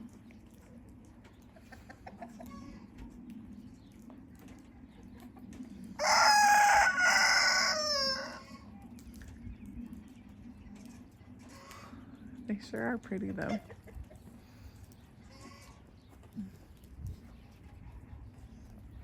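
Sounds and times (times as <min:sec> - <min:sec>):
rooster crowing: 0:06.0 - 0:08.6.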